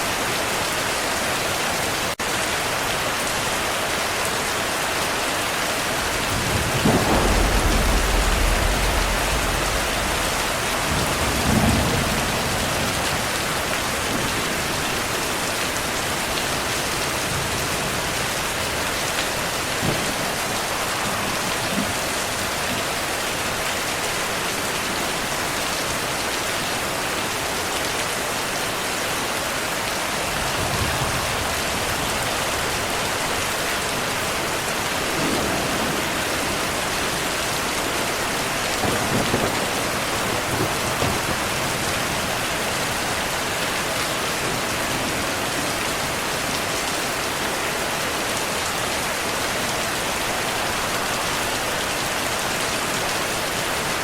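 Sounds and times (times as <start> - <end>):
steady rain: 0.0 - 54.0
rolling thunder: 5.8 - 15.2, 16.9 - 22.3, 30.2 - 33.4, 34.0 - 43.2.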